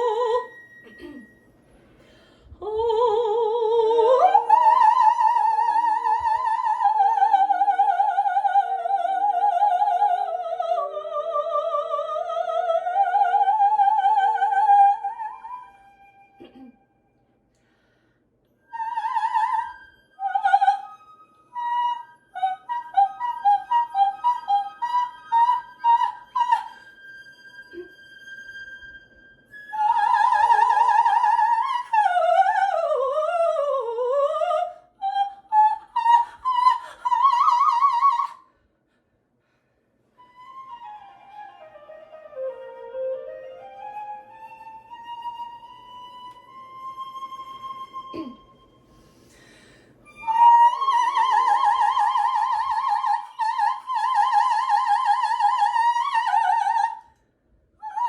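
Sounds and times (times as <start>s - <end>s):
operatic soprano singing: 0.0s - 1.2s, 2.6s - 15.7s, 29.7s - 38.5s.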